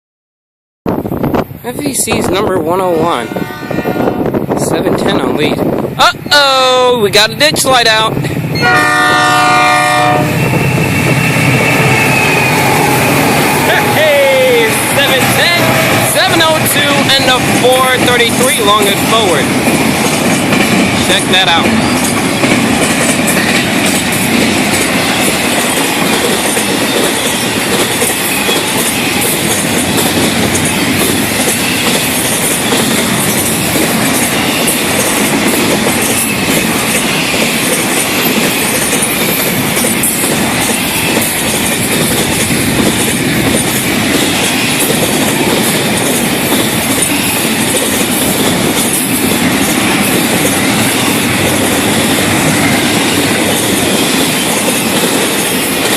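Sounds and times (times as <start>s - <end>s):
freight train rolling past: 0.9s - 55.9s
high wheel squeal: 10.2s - 14.9s
wheels clickety-clack: 14.6s - 55.9s.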